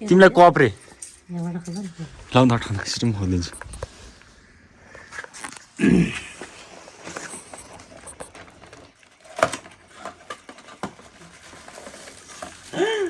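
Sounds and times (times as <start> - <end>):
packaging rustling: 5.0 - 13.0.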